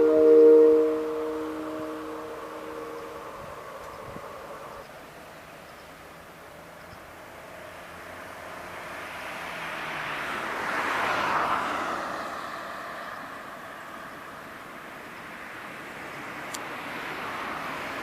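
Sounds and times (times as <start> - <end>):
car passing by: 7.3 - 18.0.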